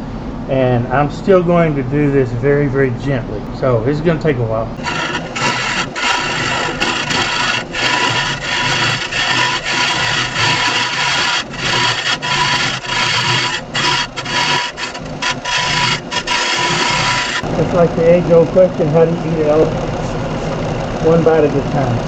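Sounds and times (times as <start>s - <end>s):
thin steady whine: 0.0s - 22.0s
lathe humming: 4.7s - 22.0s
tool scraping spinning wood: 4.8s - 17.5s.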